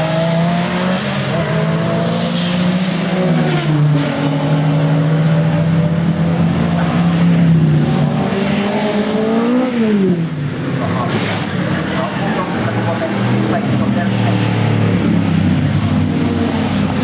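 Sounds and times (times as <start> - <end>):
race car engines revving: 0.0 - 17.0.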